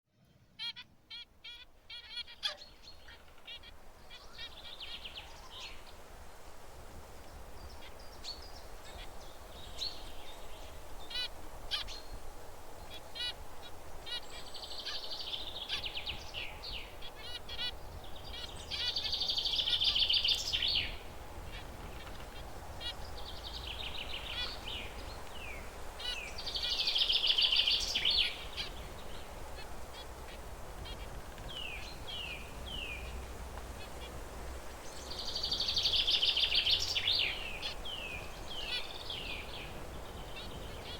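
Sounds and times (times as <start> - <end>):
buzzy finch song: 0.5 - 5.9, 7.6 - 12.2, 12.9 - 34.2, 34.8 - 40.9
finches chirping: 14.1 - 33.2, 34.8 - 40.9.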